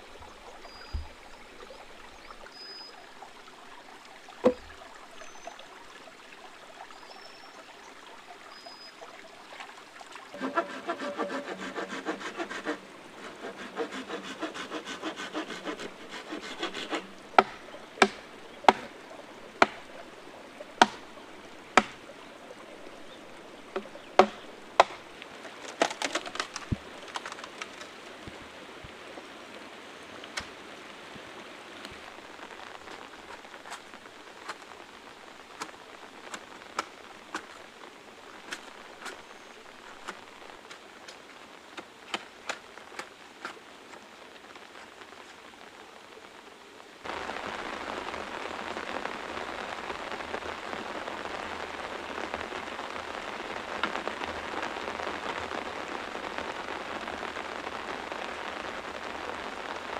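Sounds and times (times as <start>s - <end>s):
rhythmic scraping: 10.4s - 17.1s
sharp knocks: 17.4s - 18.9s.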